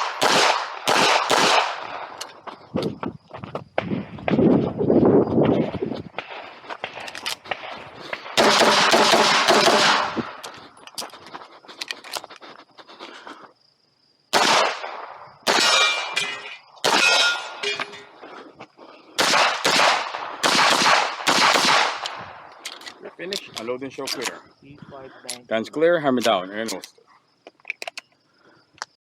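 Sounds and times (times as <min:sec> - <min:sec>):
handgun shots: 0:00.0 - 0:01.8, 0:08.4 - 0:10.2, 0:14.3 - 0:14.9, 0:15.5 - 0:16.2, 0:16.8 - 0:17.4, 0:19.2 - 0:22.2.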